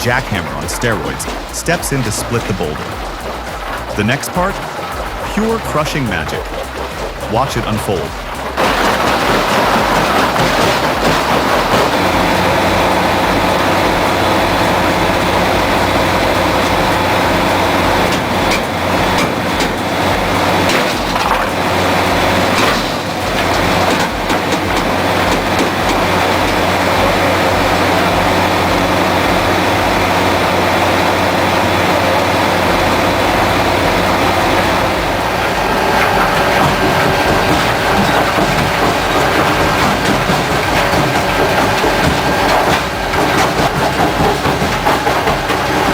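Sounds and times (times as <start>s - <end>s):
crushing machinery engine hum: 0.0s - 45.9s
machinery rattling and clatter: 0.0s - 45.9s
steady whine: 0.0s - 45.9s
knocks: 32.7s - 45.9s.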